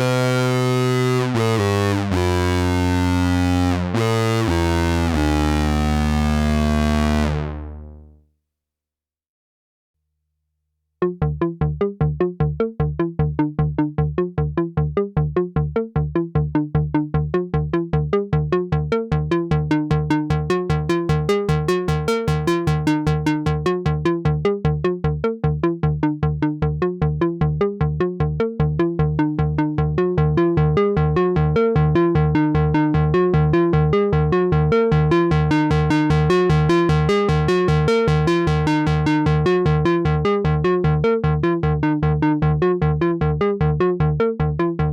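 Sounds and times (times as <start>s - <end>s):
synthesizer repeating low notes: 0.0s - 8.1s, 17.1s - 44.9s.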